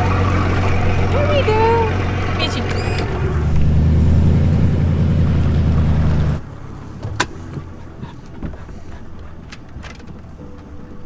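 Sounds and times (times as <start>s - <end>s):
boat engine running: 0.0s - 11.0s.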